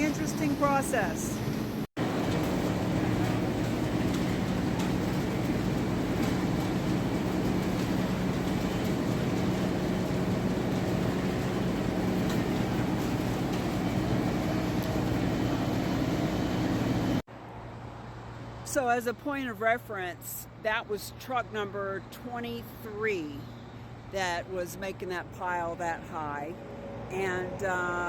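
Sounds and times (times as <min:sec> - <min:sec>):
machinery droning: 0:00.0 - 0:17.2.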